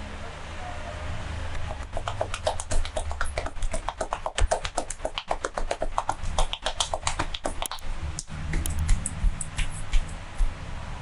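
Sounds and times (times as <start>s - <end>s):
hands tapping and slapping: 1.7s - 7.8s
low steady hum: 7.0s - 10.4s.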